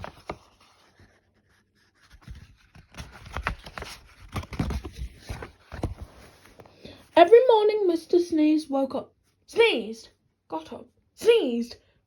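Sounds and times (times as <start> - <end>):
paper page rustling: 0.0 - 6.8.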